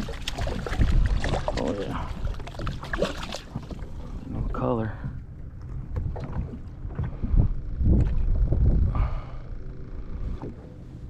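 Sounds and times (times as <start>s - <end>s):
wind buffeting microphone: 0.0s - 10.6s.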